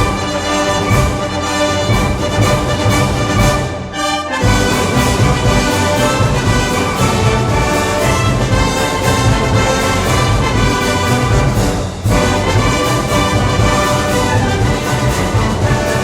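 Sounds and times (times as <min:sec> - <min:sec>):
brass band playing: 0:00.0 - 0:16.0
steady drum beat: 0:00.0 - 0:16.0.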